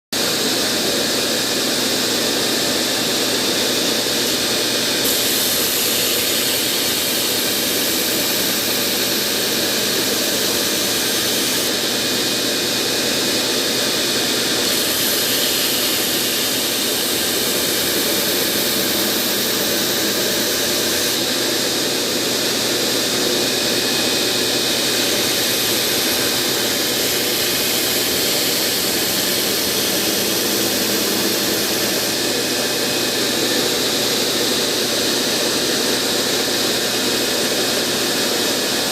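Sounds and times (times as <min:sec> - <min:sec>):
belt grinder grinding knife blade: 0:04.3 - 0:11.8, 0:14.4 - 0:21.7, 0:23.2 - 0:34.0.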